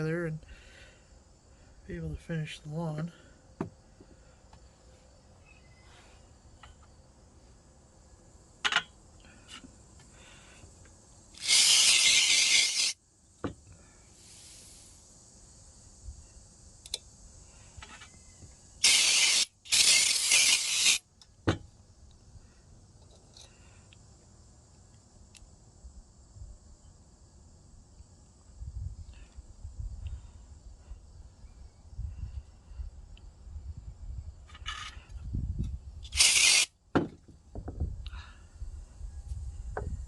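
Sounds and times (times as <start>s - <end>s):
hissing spray blasts: 11.3s - 13.0s, 14.2s - 15.2s, 18.8s - 21.1s, 36.1s - 36.8s.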